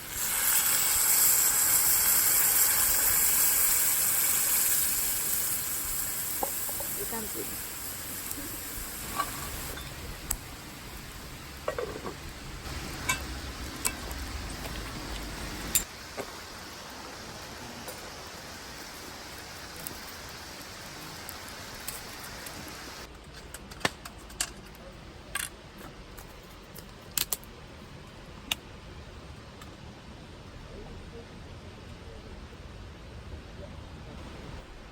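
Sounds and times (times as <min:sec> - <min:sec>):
steady background hiss: 0:00.0 - 0:34.9.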